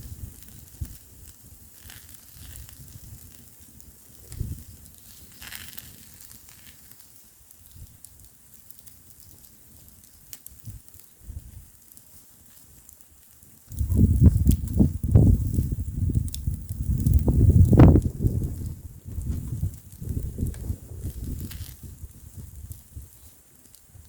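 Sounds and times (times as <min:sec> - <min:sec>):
wind rumbling on microphone: 0:00.0 - 0:01.7, 0:02.4 - 0:03.4, 0:04.1 - 0:04.8, 0:10.6 - 0:11.7, 0:13.7 - 0:23.3
wood fire crackling and popping: 0:00.0 - 0:24.0.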